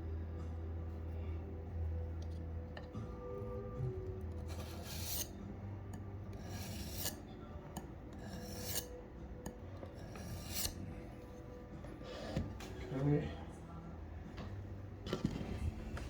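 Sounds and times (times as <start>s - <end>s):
knife scraping on sharpener: 4.3s - 5.4s, 6.3s - 7.2s, 8.1s - 9.0s, 10.0s - 10.9s.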